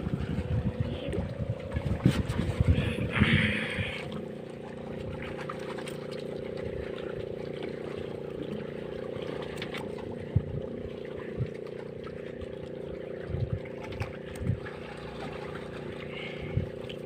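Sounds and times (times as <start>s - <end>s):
low buffeting thumps: 0.0s - 4.4s, 10.0s - 14.8s
boat engine droning: 0.0s - 17.0s.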